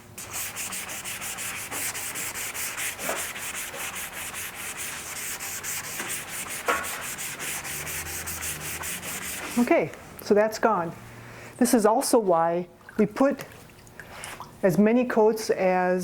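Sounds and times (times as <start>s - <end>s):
sandpaper rubbing back and forth: 0.2s - 9.7s.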